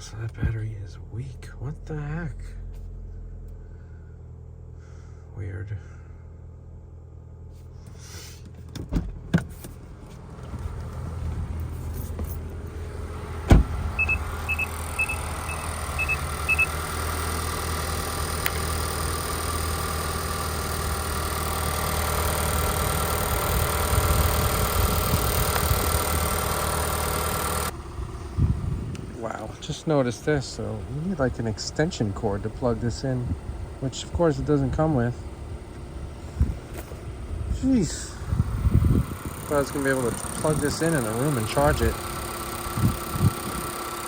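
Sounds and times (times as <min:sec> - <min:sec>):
car engine running: 0:00.0 - 0:44.0
car door thudding shut: 0:13.4 - 0:14.2
dashboard warning beeps: 0:14.0 - 0:16.8.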